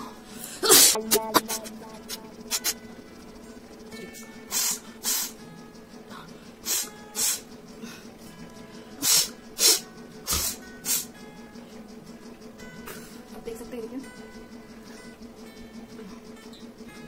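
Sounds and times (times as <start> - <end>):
person sniffing hard: 4.5 - 5.4, 6.6 - 7.5, 9.0 - 11.1.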